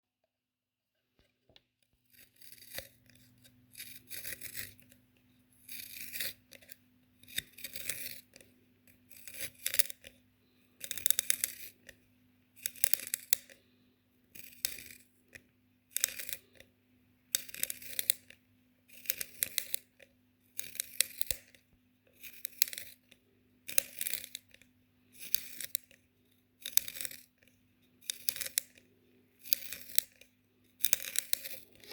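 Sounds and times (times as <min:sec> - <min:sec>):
pencil being sharpened: 0:02.1 - 0:05.0, 0:05.6 - 0:10.1, 0:10.8 - 0:11.9, 0:14.3 - 0:15.1, 0:22.1 - 0:23.1, 0:25.1 - 0:25.9, 0:26.6 - 0:27.4, 0:28.0 - 0:28.8, 0:29.4 - 0:30.2, 0:30.8 - 0:31.9.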